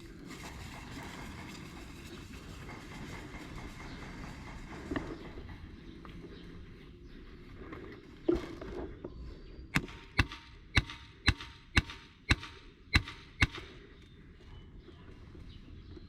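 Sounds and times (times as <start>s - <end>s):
airsoft gun shots: 9.8s - 13.8s.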